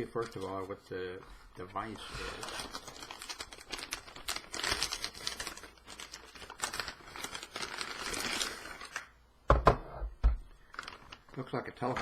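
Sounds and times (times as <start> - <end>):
cardboard and plastic rustling: 0.0 - 9.1, 10.4 - 12.0.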